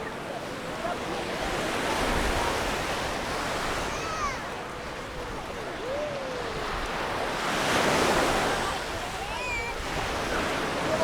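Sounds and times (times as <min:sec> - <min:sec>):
surf washing onto beach: 0:00.0 - 0:11.0.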